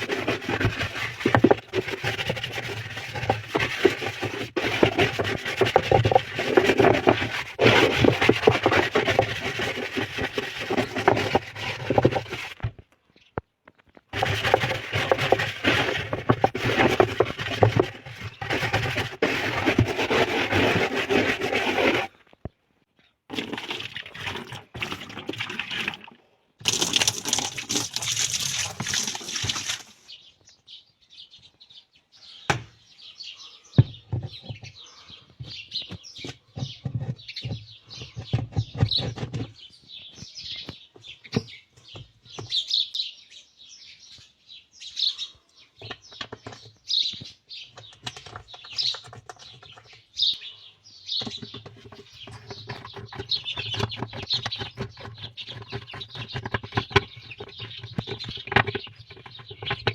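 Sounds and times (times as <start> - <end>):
birds chirping: 26.7 - 59.9.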